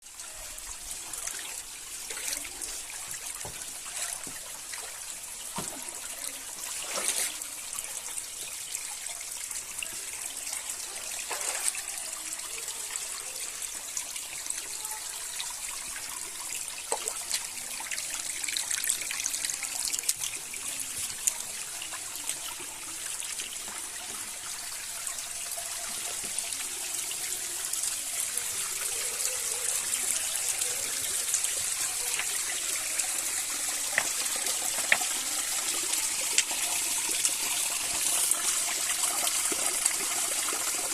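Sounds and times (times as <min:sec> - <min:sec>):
water splashes: 0:11.2 - 0:12.0.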